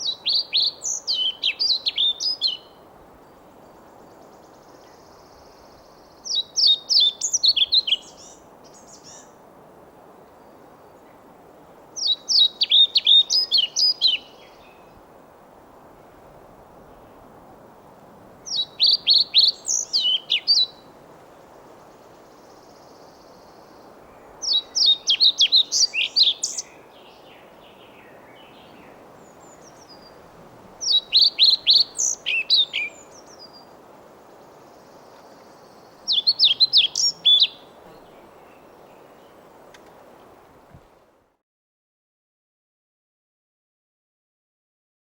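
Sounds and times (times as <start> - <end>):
bird singing high sweet notes: 18.5 - 20.8, 30.8 - 33.7, 35.0 - 39.4.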